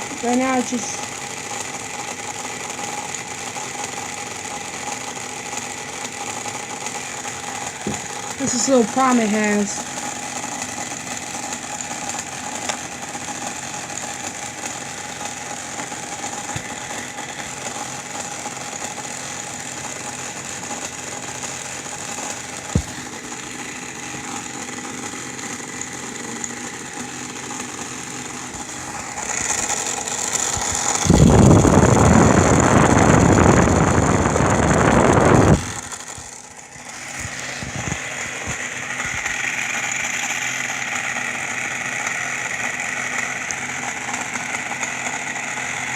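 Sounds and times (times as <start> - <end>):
air conditioner humming: 28.3 - 35.8.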